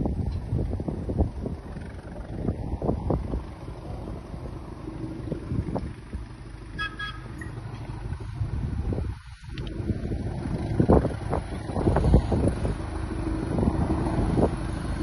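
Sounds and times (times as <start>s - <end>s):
low rumble: 0.0s - 15.0s
wind buffeting microphone: 0.0s - 15.0s
high-pitched double toot: 6.8s - 7.6s.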